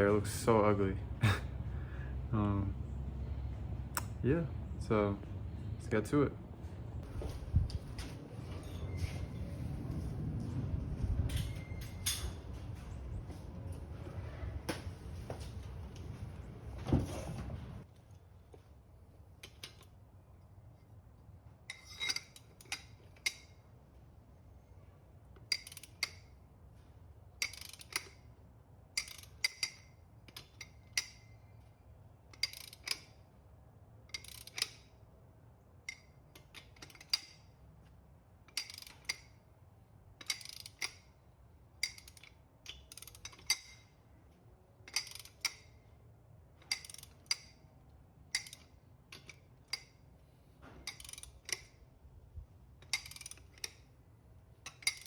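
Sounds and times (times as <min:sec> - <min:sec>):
ratchet wrench clicking: 0:21.7 - 0:23.6, 0:25.4 - 0:26.4, 0:27.4 - 0:28.3, 0:28.9 - 0:31.7, 0:32.3 - 0:33.2, 0:34.1 - 0:35.0, 0:35.8 - 0:37.5, 0:38.5 - 0:39.4, 0:40.2 - 0:41.2, 0:41.8 - 0:44.0, 0:44.8 - 0:45.8, 0:46.6 - 0:47.7, 0:48.3 - 0:50.0, 0:50.8 - 0:51.9, 0:52.8 - 0:54.0, 0:54.6 - 0:55.0.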